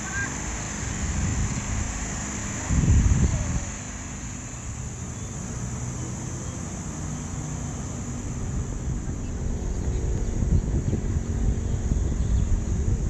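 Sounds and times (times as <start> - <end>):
wind rumble on microphone: 0.0 - 6.2, 7.7 - 13.0.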